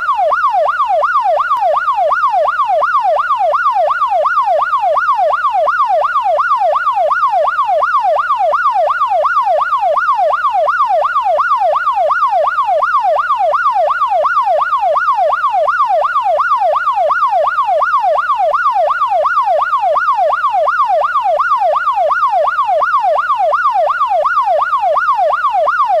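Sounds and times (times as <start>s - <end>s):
police siren yelping: 0.0s - 26.0s.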